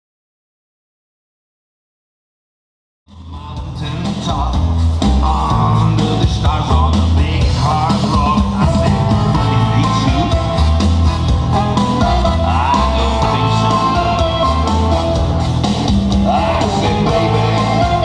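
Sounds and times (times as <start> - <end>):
loud rock music: 3.1 - 18.0
person singing: 3.3 - 15.4, 16.1 - 18.0.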